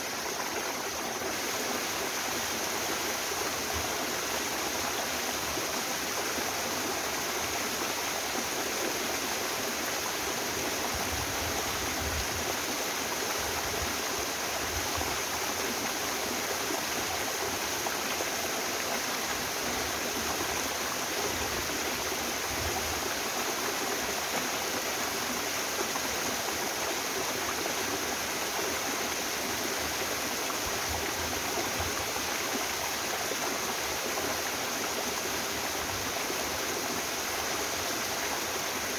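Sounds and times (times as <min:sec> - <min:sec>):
waterfall and stream rushing: 0:00.0 - 0:38.9.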